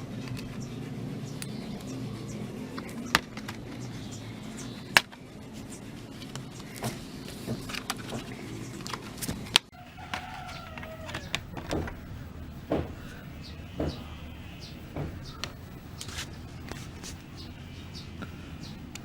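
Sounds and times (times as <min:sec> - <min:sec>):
low steady hum: 0:00.0 - 0:19.0
sharp clicks and knocks: 0:06.4 - 0:17.5
wavering animal call: 0:09.7 - 0:11.8.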